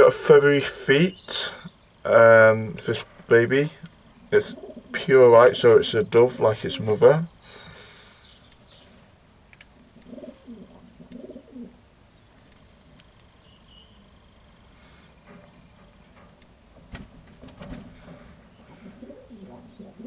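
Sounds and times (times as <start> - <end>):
doves cooing: 0.0 - 20.0
high bird chirps: 6.3 - 9.0.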